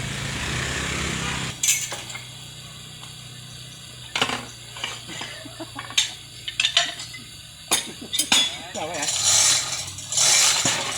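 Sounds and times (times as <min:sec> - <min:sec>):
small engine cutting off: 0:00.0 - 0:05.4
metal parts clanking: 0:05.9 - 0:10.9.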